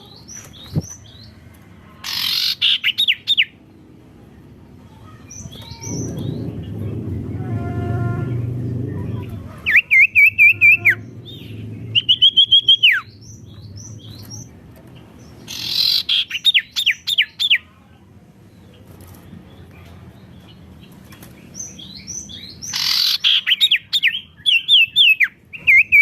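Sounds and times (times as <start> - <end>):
low rumble: 5.4 - 15.4
songbird whistling: 12.0 - 13.2.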